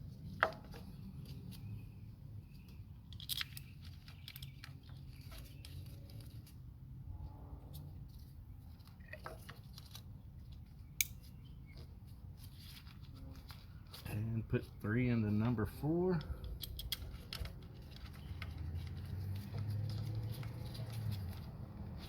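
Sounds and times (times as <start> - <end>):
plastic connectors clicking: 16.2 - 19.5.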